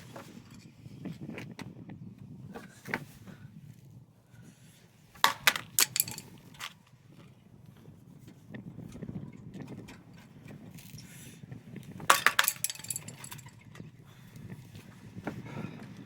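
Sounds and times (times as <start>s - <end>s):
screwdriver and plastic parts clicking: 5.2s - 6.8s.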